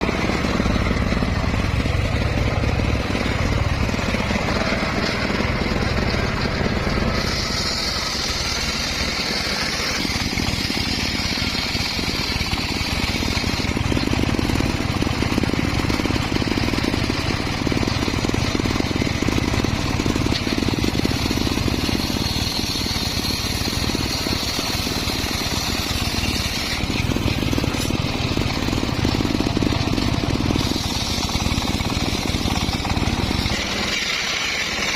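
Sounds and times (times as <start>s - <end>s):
circular saw cutting wood: 0.0s - 34.9s
high-pitched saw whine: 0.0s - 34.9s.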